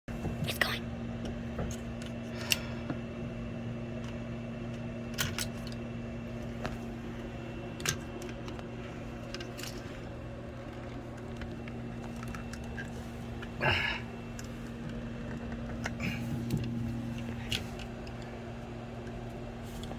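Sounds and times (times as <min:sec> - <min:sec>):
steady low hum: 0:00.1 - 0:19.9.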